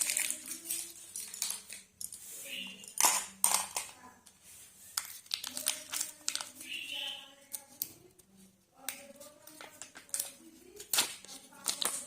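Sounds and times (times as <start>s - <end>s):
plastic capsules clicking and snapping: 0.0s - 2.2s, 2.8s - 4.0s
wrappers crinkling: 9.2s - 12.0s.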